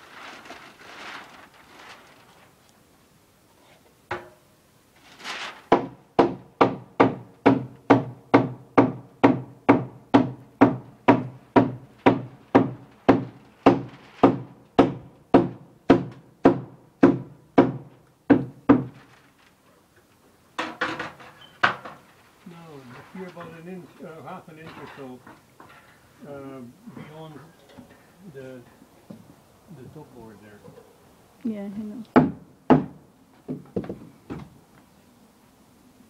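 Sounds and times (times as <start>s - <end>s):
hammer blows on wood: 5.7s - 19.0s.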